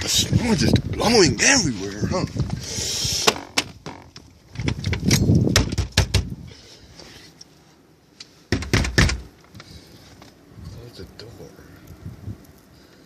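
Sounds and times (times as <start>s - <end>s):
door clicks and knocks: 3.3s - 6.3s, 8.5s - 9.3s.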